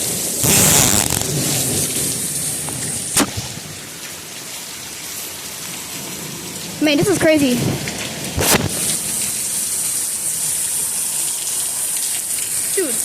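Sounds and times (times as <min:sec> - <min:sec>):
rain falling with steady hiss: 0:00.0 - 0:13.0
sharp thunder crack: 0:00.4 - 0:03.9, 0:07.0 - 0:09.2.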